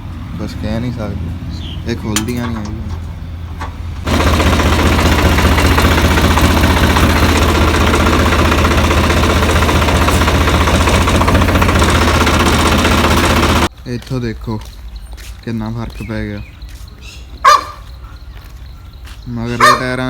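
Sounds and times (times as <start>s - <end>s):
tractor diesel engine running: 0.0s - 13.7s.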